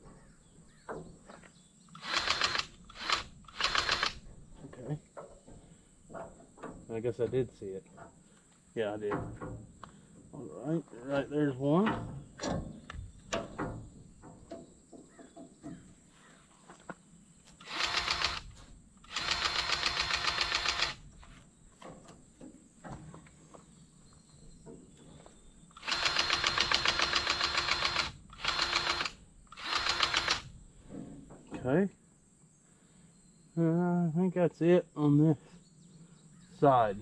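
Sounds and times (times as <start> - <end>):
grease gun pump motor pulsing: 1.9 - 4.2, 17.6 - 21.0, 25.7 - 30.5.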